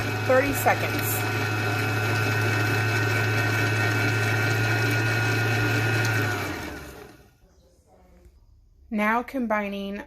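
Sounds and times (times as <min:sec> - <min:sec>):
electric mixer whining: 0:00.0 - 0:07.3.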